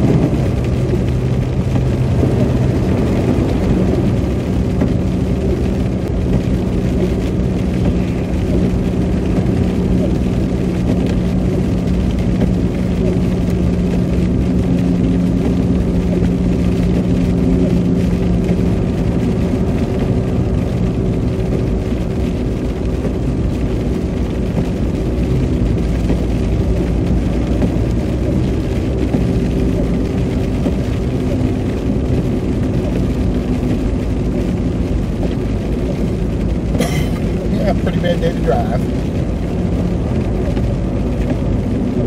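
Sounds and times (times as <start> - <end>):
car engine hum: 0.0 - 42.0
tyre noise on wet road: 0.0 - 42.0.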